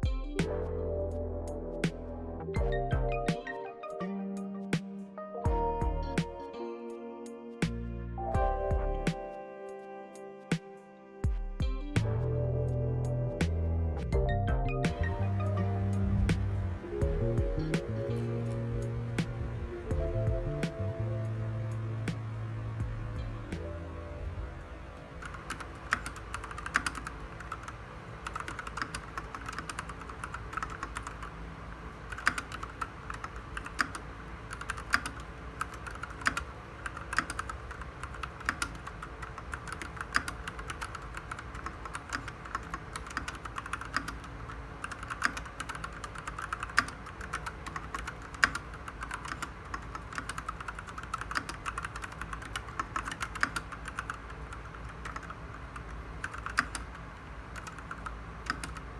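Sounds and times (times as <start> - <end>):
mechanical keyboard typing: 25.2 - 31.4, 32.0 - 58.9.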